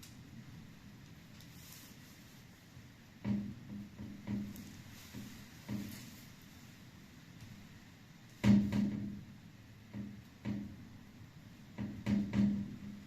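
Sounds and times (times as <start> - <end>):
hollow ringing knocks: 3.2 - 6.1, 8.4 - 9.3, 11.7 - 13.0.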